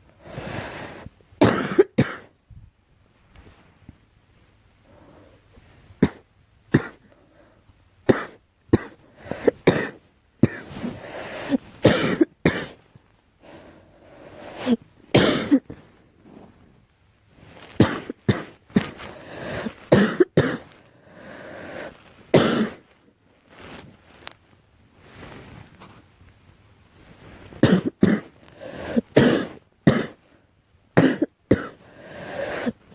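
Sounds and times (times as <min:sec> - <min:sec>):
girl coughing: 0:01.4 - 0:02.3, 0:06.0 - 0:07.1, 0:08.1 - 0:10.8, 0:11.4 - 0:12.8, 0:14.6 - 0:15.8, 0:17.8 - 0:20.8, 0:22.3 - 0:22.9, 0:27.6 - 0:30.2, 0:31.0 - 0:31.8.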